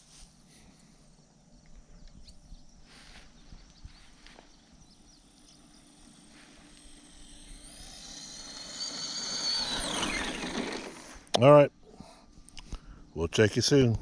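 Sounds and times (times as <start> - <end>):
electric motor and gear whine: 1.0 - 11.6.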